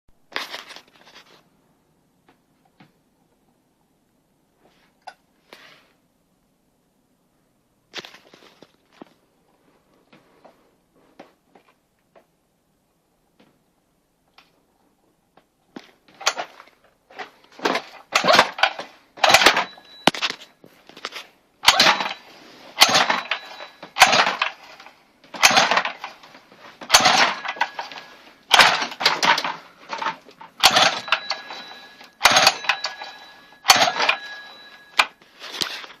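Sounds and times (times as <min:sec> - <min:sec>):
engine cranking without starting: 0:16.2 - 0:16.6, 0:17.6 - 0:20.0, 0:21.6 - 0:35.1.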